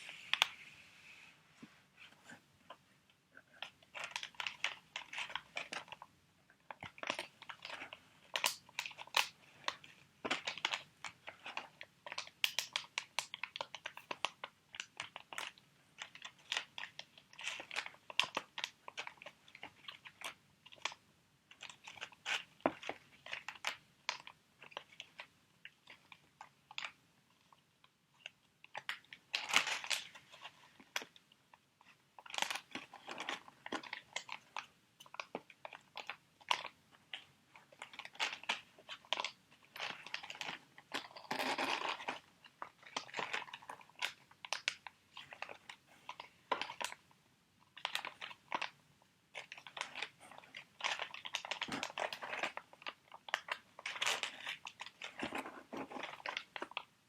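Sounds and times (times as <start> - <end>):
plastic packets crackling: 3.9 - 6.1, 32.2 - 47.0, 47.7 - 56.9.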